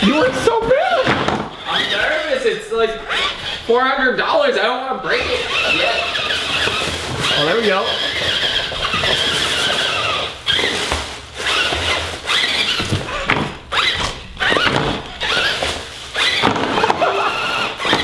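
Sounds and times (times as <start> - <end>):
rc truck electric motor whining: 1.6 - 2.4, 3.0 - 3.7, 5.1 - 18.0.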